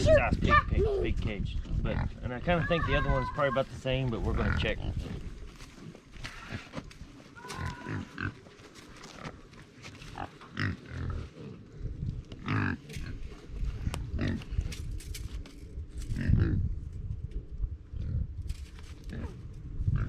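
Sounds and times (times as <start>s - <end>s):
pigs grunting: 4.2s - 5.2s, 6.2s - 9.4s, 10.0s - 13.3s, 14.1s - 14.5s.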